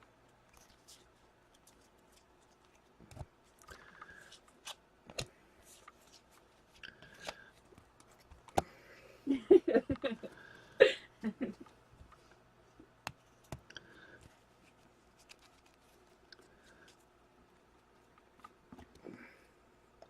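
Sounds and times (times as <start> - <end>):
cards clicking and sliding: 0.4 - 8.7.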